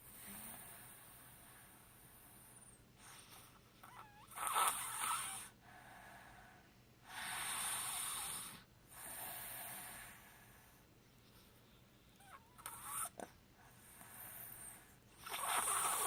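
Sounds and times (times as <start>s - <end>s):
snoring: 2.5s - 5.6s, 7.1s - 10.2s, 12.2s - 13.3s, 13.9s - 16.0s.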